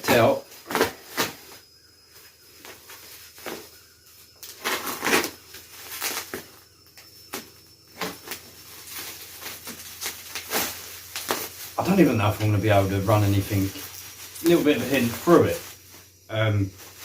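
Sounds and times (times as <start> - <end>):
packaging rustling: 4.3 - 6.4, 8.0 - 16.0.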